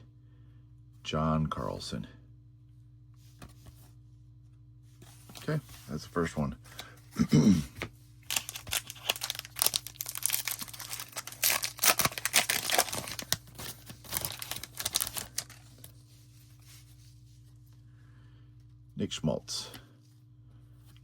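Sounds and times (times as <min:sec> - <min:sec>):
wrapper tearing and crinkling: 0:08.3 - 0:15.9.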